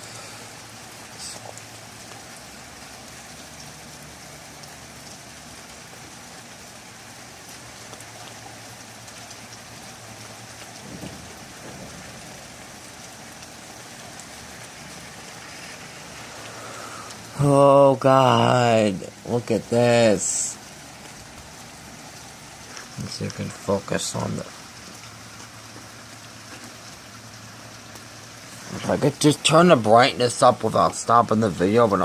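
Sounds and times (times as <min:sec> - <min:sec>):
heavy rain falling: 0:00.0 - 0:32.0.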